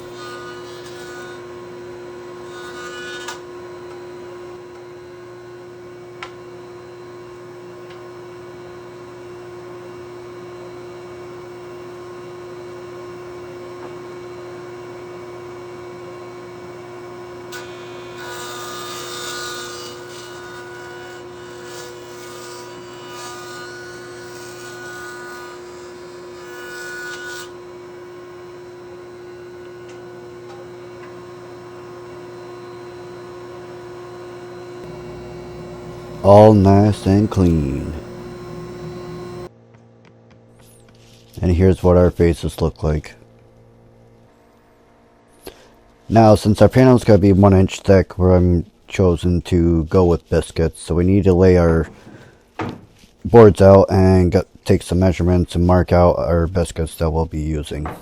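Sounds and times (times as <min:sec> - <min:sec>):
jointer cutting board: 0:00.0 - 0:39.5, 0:51.4 - 0:53.8, 0:57.7 - 0:58.0
jointer motor hum: 0:00.0 - 0:39.5, 0:51.8 - 0:53.0.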